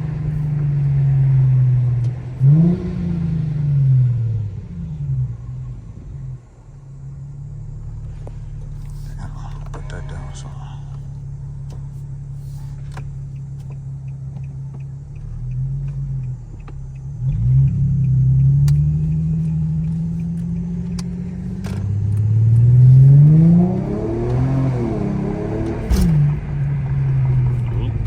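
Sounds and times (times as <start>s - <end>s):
car engine accelerating: 0.0s - 28.0s
light regular ticking: 8.0s - 24.9s.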